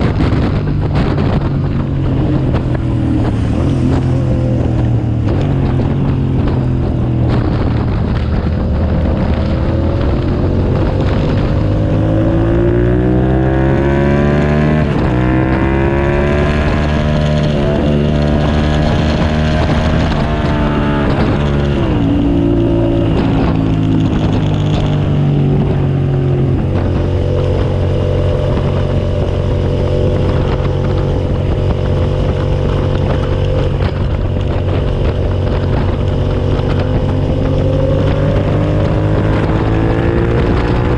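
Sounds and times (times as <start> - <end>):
motorcycle engine at speed: 0.0 - 40.9.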